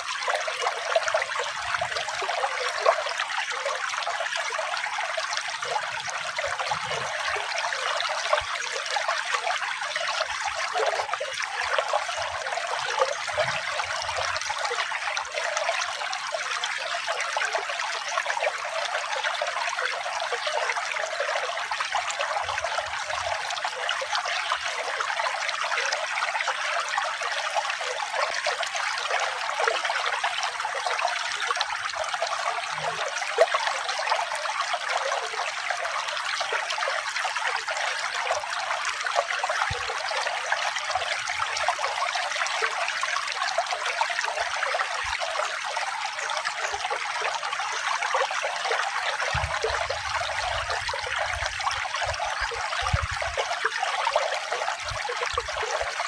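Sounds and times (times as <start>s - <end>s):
water trickling: 0.0s - 56.0s.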